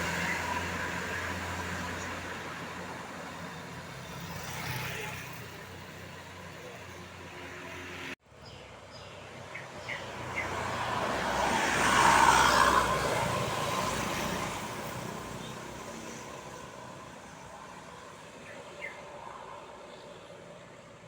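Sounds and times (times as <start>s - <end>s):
bus passing by: 0.0s - 21.0s.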